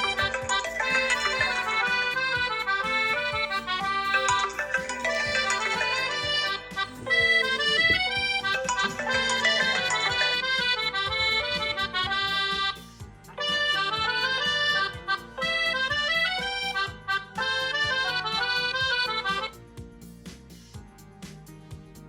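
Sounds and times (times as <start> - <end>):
phone ringtone melody: 0.0 - 12.6, 13.4 - 19.5
steady beat: 0.0 - 22.0.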